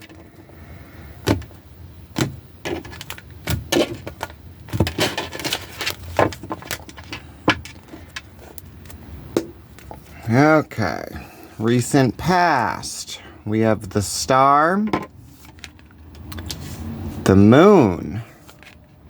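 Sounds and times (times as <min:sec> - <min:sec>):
cards shuffling: 0:02.7 - 0:09.0.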